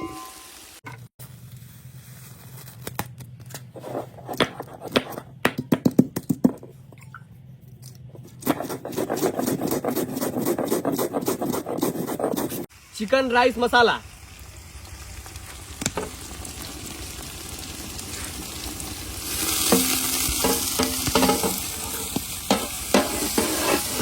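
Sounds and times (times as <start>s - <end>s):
spatula scraping a pan: 19.3s - 24.0s.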